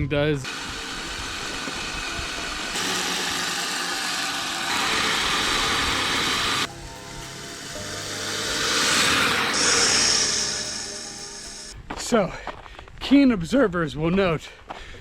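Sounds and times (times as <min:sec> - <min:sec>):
toy vehicle motor whirring: 0:00.5 - 0:06.7.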